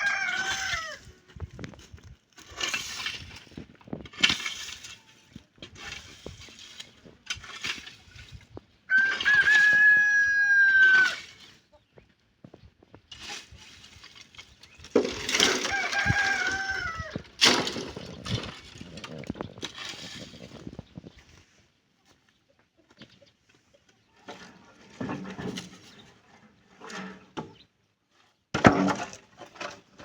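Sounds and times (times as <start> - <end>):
rooster crowing: 0.0 - 1.0, 8.9 - 11.2, 15.6 - 17.1.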